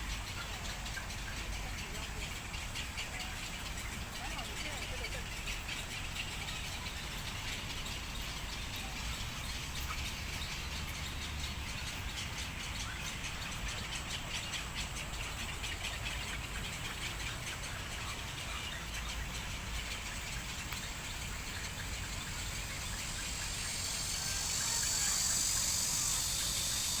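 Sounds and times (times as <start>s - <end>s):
bird calls: 0.0s - 27.0s
high insect drone: 0.0s - 27.0s
insects calling in fast pulses: 0.0s - 27.0s.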